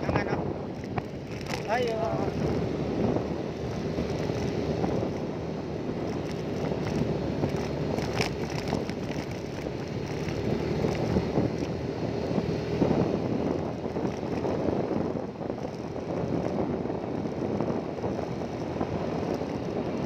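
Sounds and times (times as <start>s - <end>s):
engine running steadily: 0.0s - 20.0s
wind noise on microphone: 0.0s - 20.0s.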